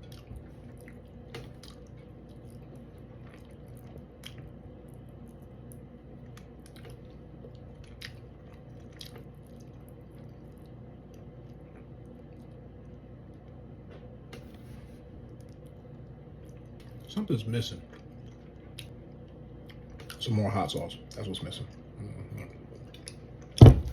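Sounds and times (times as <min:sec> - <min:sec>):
person chewing: 0:00.0 - 0:13.0, 0:17.8 - 0:20.2
low steady hum: 0:00.0 - 0:23.9.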